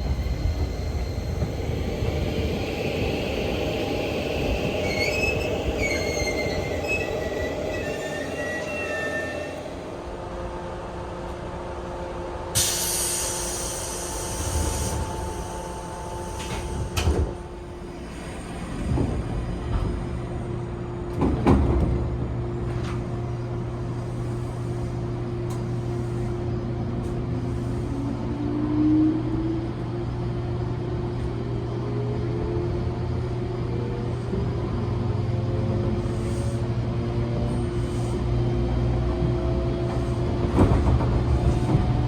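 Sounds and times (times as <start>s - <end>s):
train hum with whine: 0.0s - 42.0s
air release hiss: 12.6s - 17.0s.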